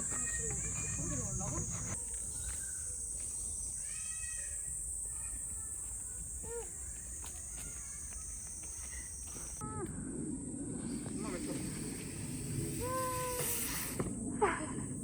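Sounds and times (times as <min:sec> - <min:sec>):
short insect chirps: 0:00.0 - 0:09.6
insects droning: 0:00.0 - 0:15.0.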